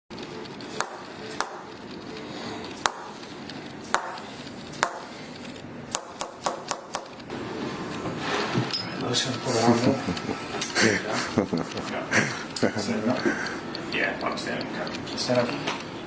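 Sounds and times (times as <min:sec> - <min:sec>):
sharp clicks: 0:11.4 - 0:15.9.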